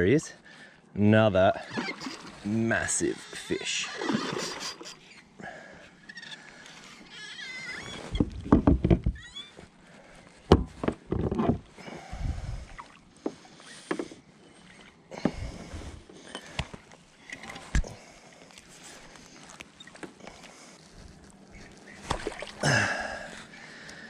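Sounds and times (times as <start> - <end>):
water splashing: 22.0 - 23.1.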